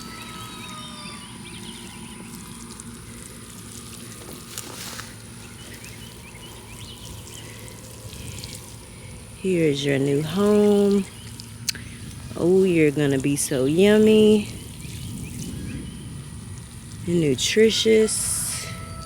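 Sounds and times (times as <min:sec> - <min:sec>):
hose water pattering on soil: 0:00.0 - 0:18.6
birds chirping faintly: 0:00.0 - 0:19.0.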